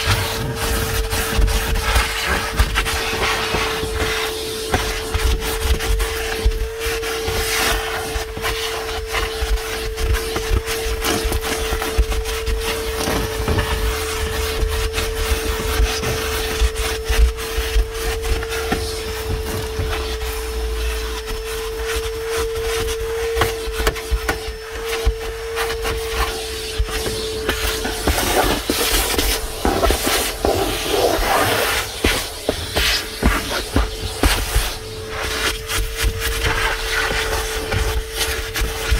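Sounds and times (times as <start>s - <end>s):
hose knocking and scraping: 0.0s - 6.6s, 10.2s - 21.4s, 26.2s - 38.9s
shop vacuum whining: 0.0s - 38.9s.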